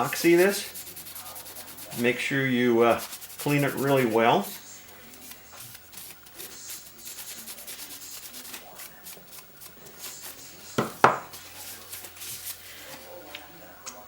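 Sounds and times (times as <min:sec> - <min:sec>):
rag scrubbing metal plate: 0:00.0 - 0:10.2.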